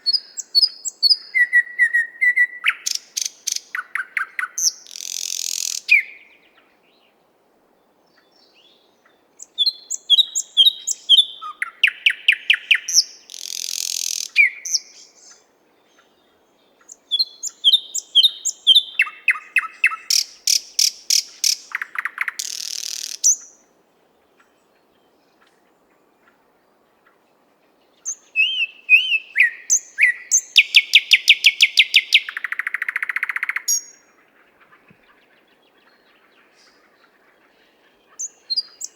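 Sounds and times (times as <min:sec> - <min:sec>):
thrush nightingale singing: 0:00.0 - 0:07.1, 0:07.9 - 0:23.8, 0:27.8 - 0:38.9.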